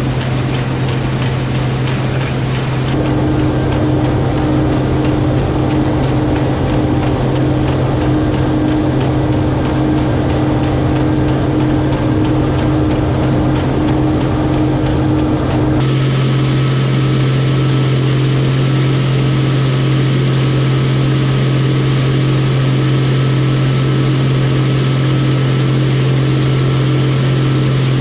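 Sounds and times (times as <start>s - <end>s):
fast light ticking: 0.0s - 15.9s
combine engine hum: 0.0s - 28.0s.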